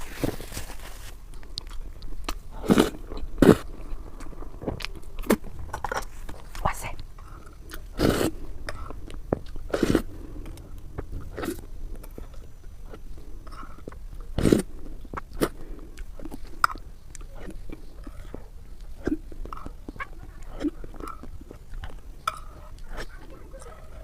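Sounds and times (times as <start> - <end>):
person taking loud bites: 7.2 - 10.6
chewing clicks: 15.1 - 23.8.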